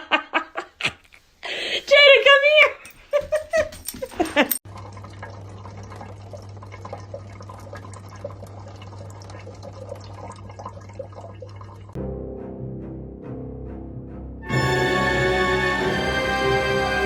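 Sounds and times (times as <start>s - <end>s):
water running: 3.1s - 12.0s, 14.5s - 17.0s
water drips and crackles: 4.6s - 12.0s
music: 12.0s - 17.0s.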